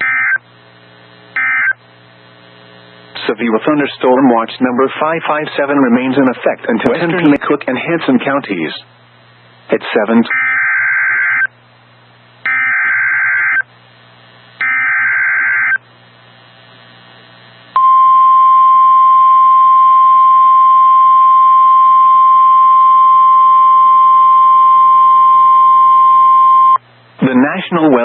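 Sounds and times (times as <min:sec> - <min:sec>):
faint radio hiss: 0:00.5 - 0:10.3, 0:15.8 - 0:17.8, 0:25.2 - 0:28.0
steady alarm tone: 0:10.3 - 0:11.5, 0:12.4 - 0:13.7.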